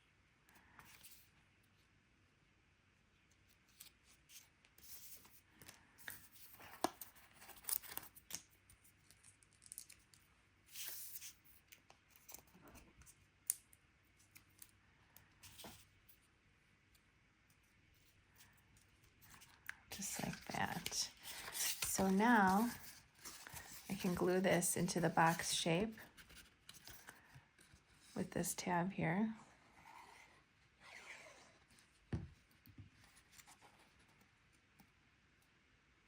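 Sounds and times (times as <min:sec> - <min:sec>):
paper rustling: 0:19.0 - 0:28.2.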